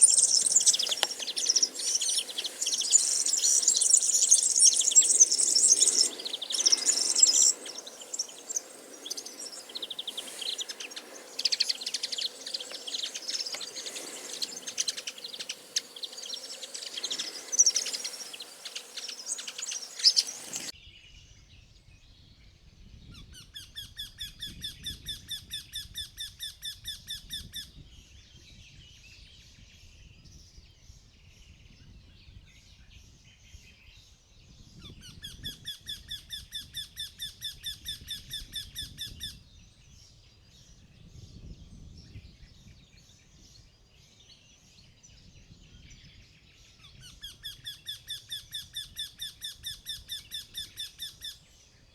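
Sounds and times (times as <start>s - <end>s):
many birds chirping: 0.0s - 21.4s.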